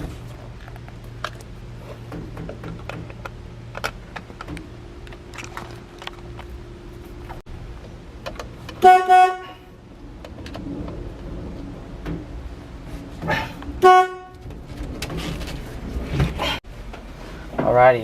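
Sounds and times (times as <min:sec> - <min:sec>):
car horn beeps: 0:08.7 - 0:09.8, 0:13.8 - 0:14.5.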